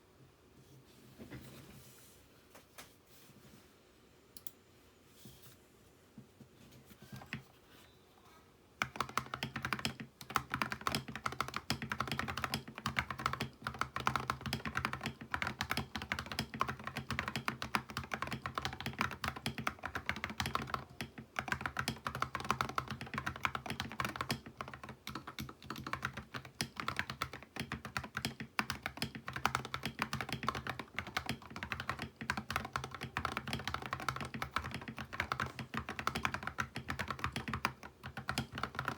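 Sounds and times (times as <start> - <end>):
fast mechanical keyboard typing: 8.8 - 38.9.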